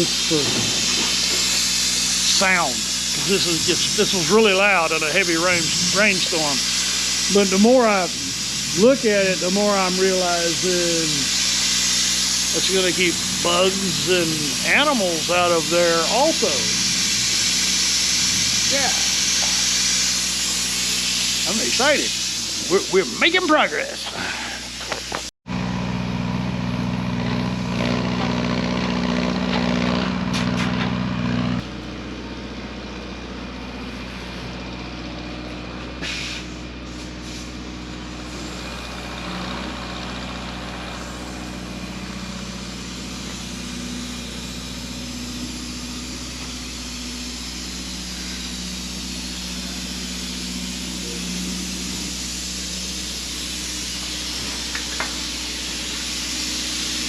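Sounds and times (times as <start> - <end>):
hiss: 0.0 - 25.3, 36.0 - 57.0
heavy equipment engine running: 0.0 - 57.0.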